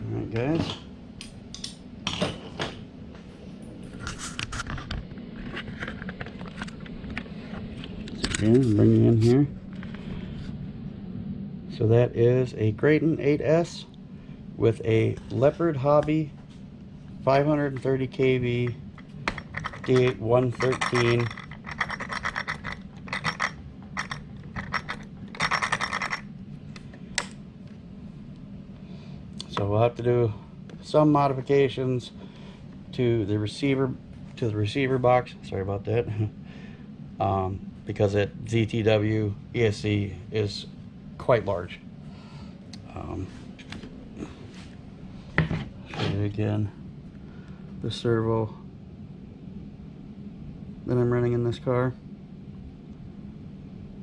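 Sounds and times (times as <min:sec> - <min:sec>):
low steady hum: 0:00.0 - 0:54.0
parts clicking and rustling: 0:18.9 - 0:27.4.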